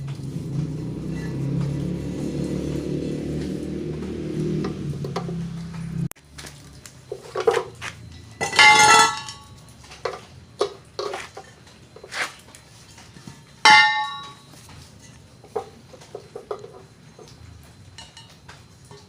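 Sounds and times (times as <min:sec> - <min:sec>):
metal objects clinking: 0:07.0 - 0:19.0
ringing metal clangs: 0:07.2 - 0:10.8, 0:12.9 - 0:19.0.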